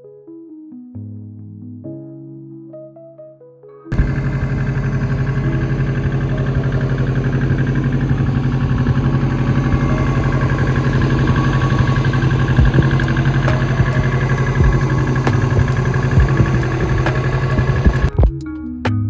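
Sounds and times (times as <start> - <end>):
engine idling: 3.9 - 18.1.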